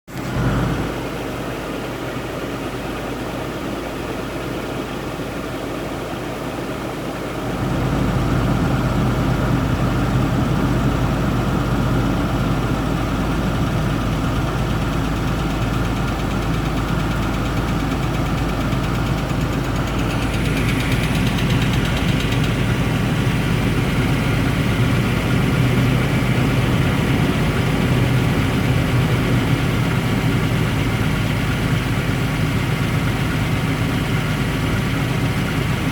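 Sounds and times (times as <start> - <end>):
engine idling with a knock: 11.3 - 35.9.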